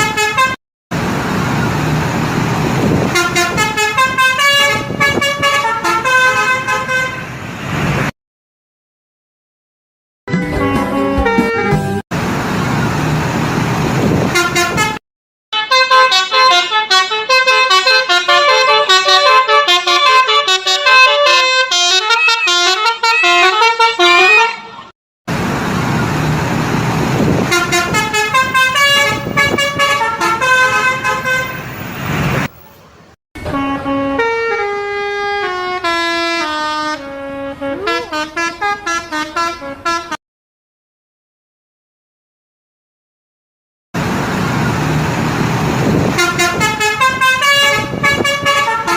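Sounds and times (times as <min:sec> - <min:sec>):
bus musical air horns: 0:00.0 - 0:00.6, 0:02.8 - 0:07.8, 0:10.3 - 0:12.0, 0:14.1 - 0:24.9, 0:27.2 - 0:32.6, 0:33.4 - 0:40.2, 0:45.8 - 0:48.9
noisy rush: 0:25.3 - 0:33.2.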